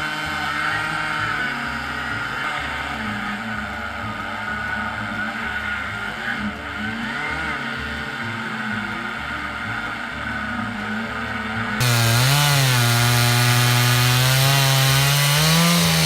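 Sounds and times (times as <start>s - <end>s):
chainsaw running at high revs: 0.0s - 1.4s, 11.8s - 16.0s.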